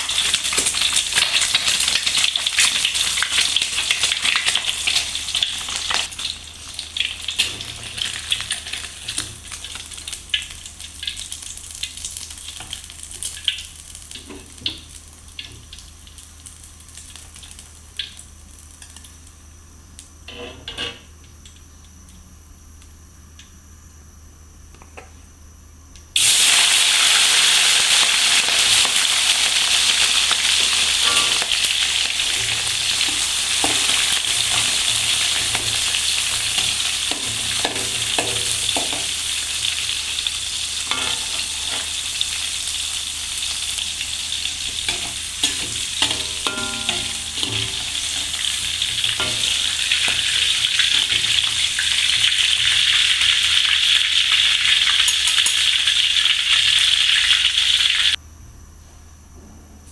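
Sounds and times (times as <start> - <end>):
food sizzling in hot oil: 0.0 - 19.3, 26.2 - 58.2
utensil clinking and scraping pan: 30.7 - 31.6, 40.9 - 42.0, 44.9 - 51.5.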